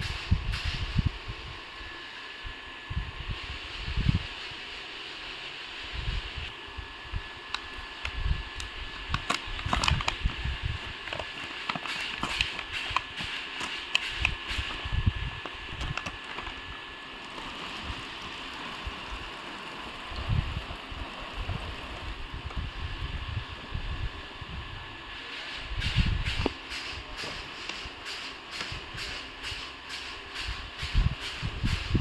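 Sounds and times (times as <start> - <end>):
steady hiss: 0.0 - 32.0
packaging crackling and clicking: 7.5 - 23.3.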